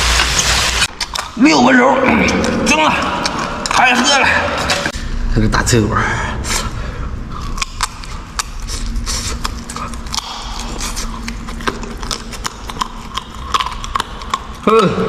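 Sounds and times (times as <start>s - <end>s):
chewing crunchy cartilage: 7.2s - 15.0s.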